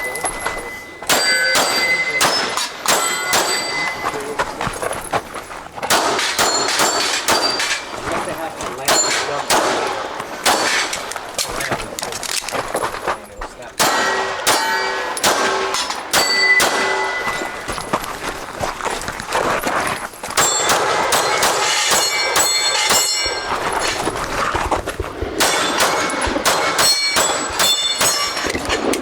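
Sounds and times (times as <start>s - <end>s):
metallic clang of steel targets: 0.0s - 4.6s, 5.8s - 11.4s, 13.8s - 18.0s, 20.4s - 24.2s, 25.4s - 29.0s
pistol shots: 1.1s - 4.0s, 5.8s - 8.0s, 8.8s - 11.3s, 13.8s - 17.7s, 20.4s - 24.0s, 25.3s - 29.0s.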